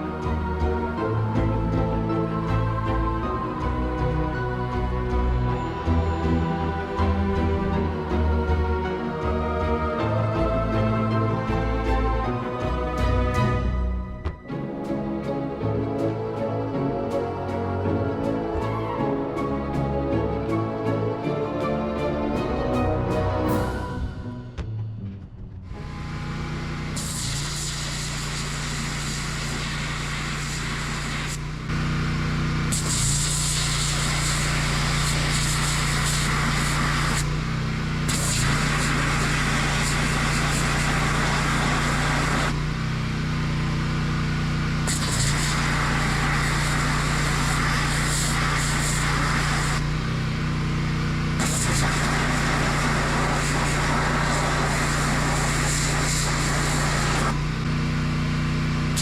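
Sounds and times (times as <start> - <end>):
pressure washer engine running: 25.9 - 59.0
high-pressure spray hissing: 26.9 - 31.7, 32.6 - 42.6, 44.8 - 50.0, 51.4 - 57.6.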